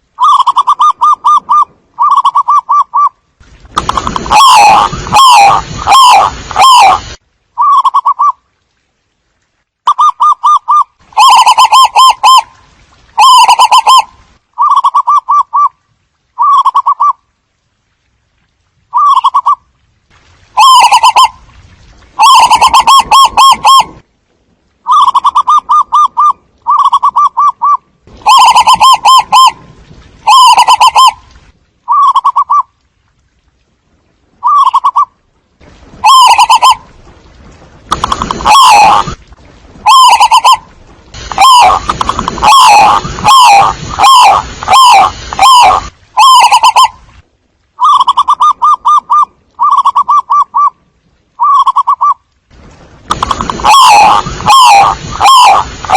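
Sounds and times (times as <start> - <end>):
doves cooing: 38.0 - 39.2, 41.4 - 46.9, 53.2 - 55.9.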